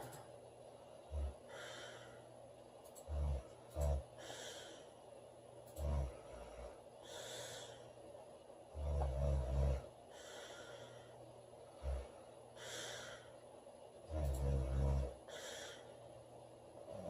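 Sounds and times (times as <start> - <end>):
breathy exhale: 4.2 - 4.9, 6.2 - 7.9, 10.1 - 11.2, 11.8 - 13.4, 15.3 - 16.0
girl snoring: 8.8 - 9.9, 14.1 - 15.8
short snort: 14.1 - 15.2.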